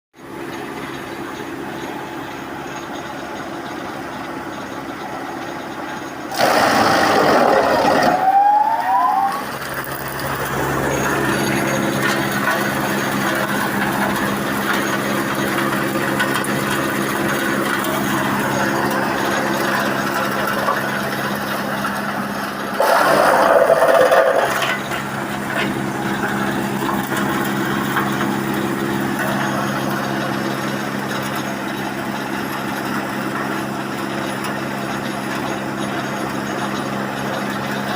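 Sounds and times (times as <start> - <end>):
sawdust machine humming: 6.2 - 37.9.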